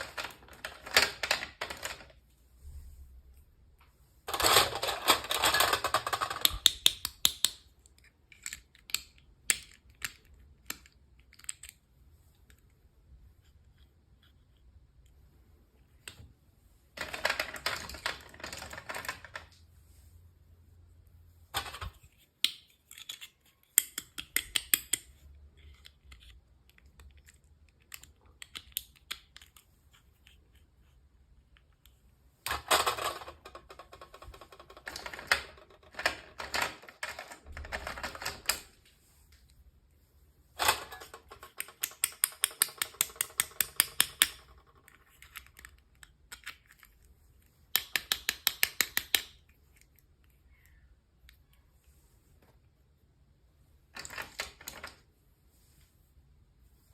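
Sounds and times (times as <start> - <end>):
toy parts clicking and tapping: 4.3 - 12.7, 21.6 - 38.7, 40.6 - 51.6.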